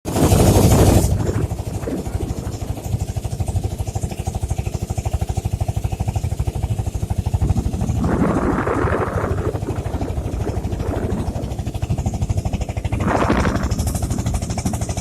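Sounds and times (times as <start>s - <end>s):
motorboat engine running: 0.1s - 15.0s
loud rushing noise: 7.5s - 12.0s, 12.9s - 14.2s.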